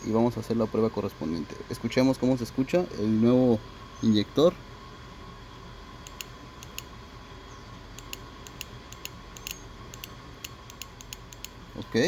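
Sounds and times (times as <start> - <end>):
fuel injector clicking: 6.0 - 6.9, 8.0 - 11.6.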